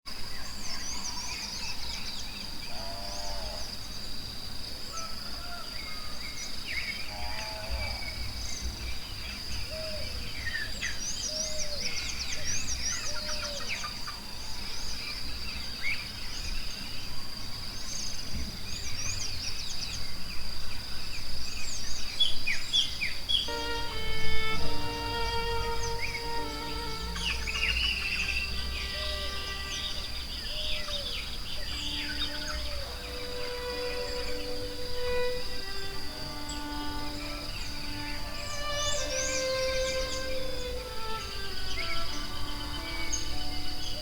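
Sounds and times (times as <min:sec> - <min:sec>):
birds chirping: 0:22.8 - 0:44.0
high-pitched insect drone: 0:23.4 - 0:44.0.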